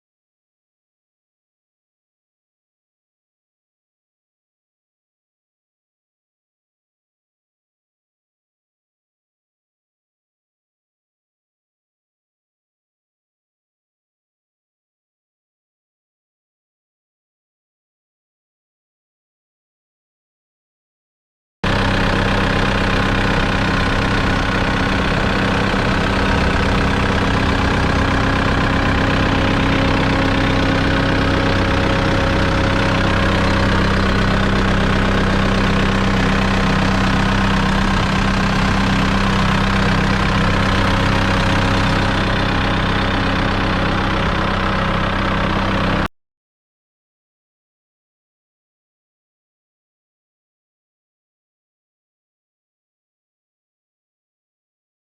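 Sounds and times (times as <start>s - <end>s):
diesel engine running steadily: 21.6s - 46.1s.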